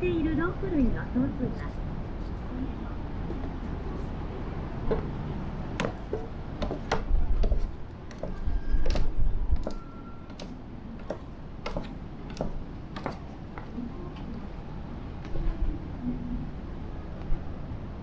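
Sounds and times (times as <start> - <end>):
sharp clicks and knocks: 5.8 - 13.7.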